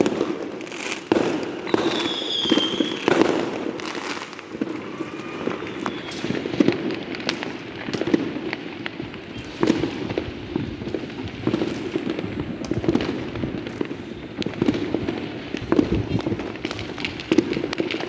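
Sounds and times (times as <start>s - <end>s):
fireworks bangs and crackling: 0.0s - 18.0s
high firework whistle: 1.6s - 8.2s, 9.2s - 9.9s.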